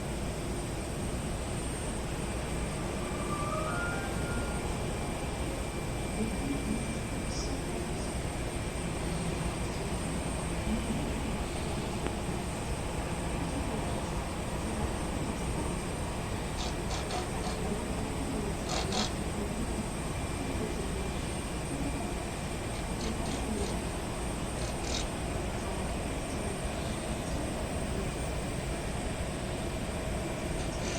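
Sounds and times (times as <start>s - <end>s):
jet engines rumbling: 0.0s - 30.9s.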